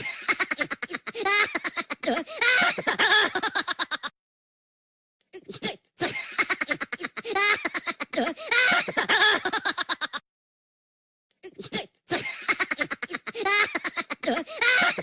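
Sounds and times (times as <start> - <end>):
high rapid cartoon giggling: 0.0 - 4.1, 6.0 - 10.2, 12.2 - 15.0.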